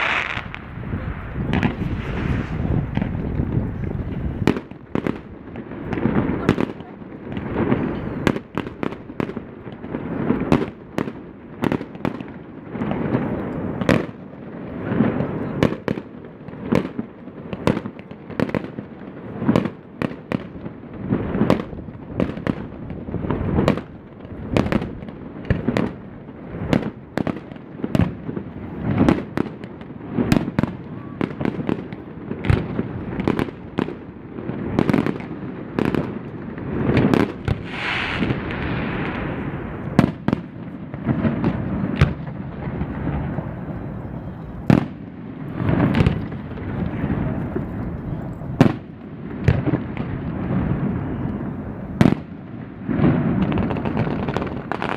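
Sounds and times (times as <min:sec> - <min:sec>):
firework shells bursting: 0:00.0 - 0:06.1, 0:36.8 - 0:43.5
fireworks crackling and rumbling: 0:00.0 - 0:54.9
onlookers' voices: 0:42.6 - 0:44.8, 0:45.5 - 0:48.7.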